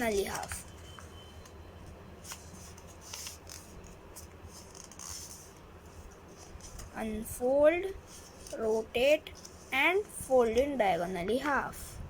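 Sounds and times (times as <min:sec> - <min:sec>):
paper rustling and creasing: 0:00.0 - 0:01.1, 0:02.2 - 0:07.2, 0:07.8 - 0:10.8
low steady hum: 0:00.0 - 0:12.0.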